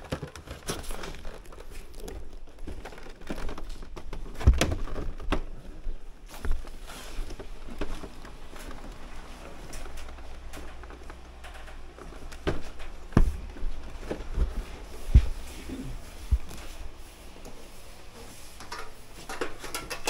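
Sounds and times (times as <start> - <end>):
objects knocking and clicking: 0.0 - 5.6, 18.6 - 20.0.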